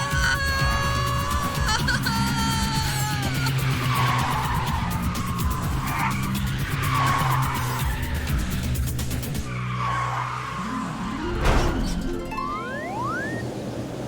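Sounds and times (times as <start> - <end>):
car tyres squealing: 0.2 - 13.4
cartoon background music: 11.1 - 13.4.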